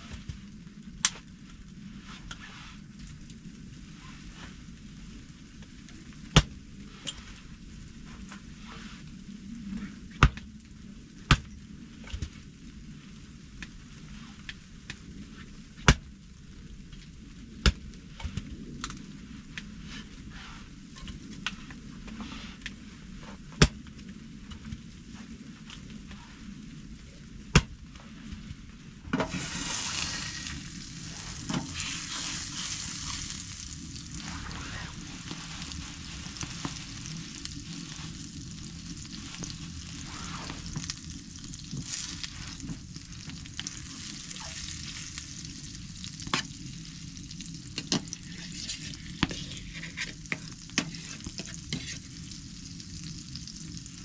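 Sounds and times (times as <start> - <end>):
stirring clicks and scrapes: 29.2 - 45.3, 47.6 - 52.3
food sizzling in a pan: 29.2 - 54.0.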